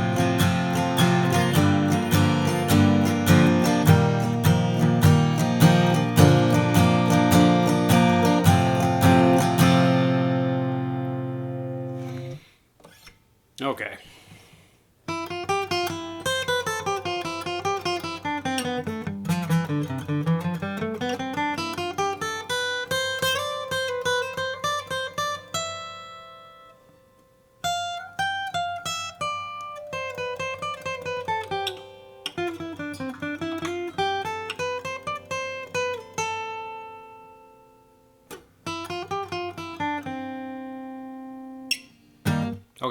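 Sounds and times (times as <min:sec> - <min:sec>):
acoustic guitar single-note runs: 0:00.0 - 0:12.3
guitar chord ringing: 0:00.0 - 0:12.4.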